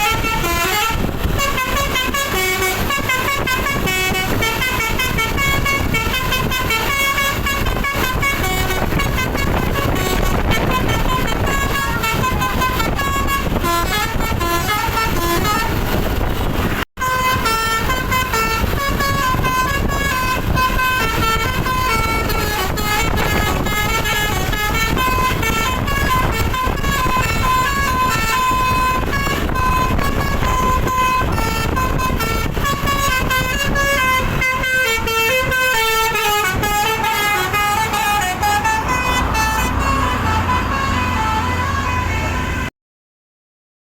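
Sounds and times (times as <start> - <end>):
bus engine: 0.0 - 42.7
multi-tone air horn melody: 0.0 - 42.7
road rumble: 0.0 - 42.7.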